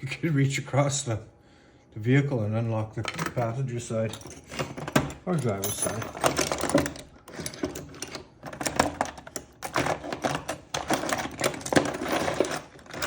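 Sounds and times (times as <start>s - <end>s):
metal keys clicking and clattering: 3.0s - 13.0s.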